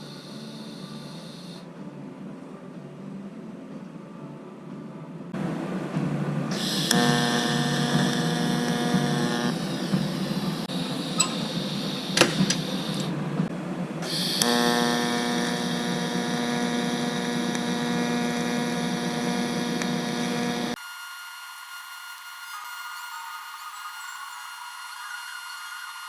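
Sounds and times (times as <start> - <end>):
welding torch hum and hiss: 0.0 - 1.7, 5.4 - 26.0
sharp clicks: 6.6 - 13.1.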